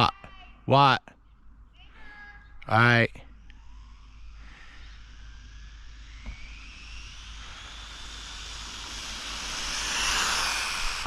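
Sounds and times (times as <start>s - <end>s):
rc car electric motor whine: 3.3s - 11.0s.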